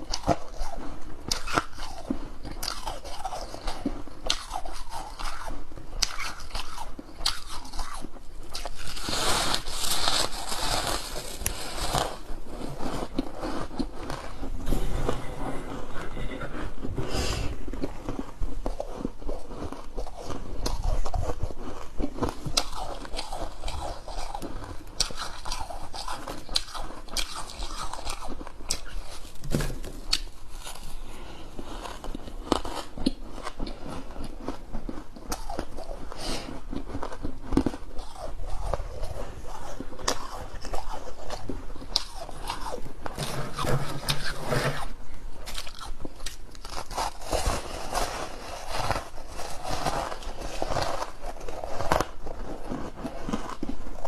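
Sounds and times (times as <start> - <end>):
person crunching ice: 2.6 - 14.4, 17.8 - 31.0, 45.4 - 54.0.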